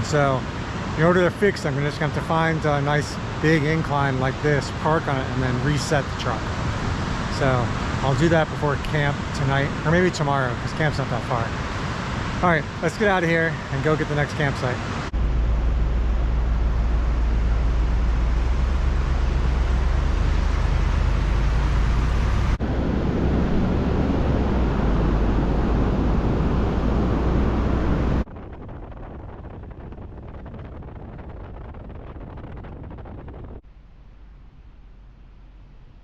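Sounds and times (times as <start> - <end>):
truck road and wind noise: 0.0 - 36.0
deep low hum: 15.1 - 36.0.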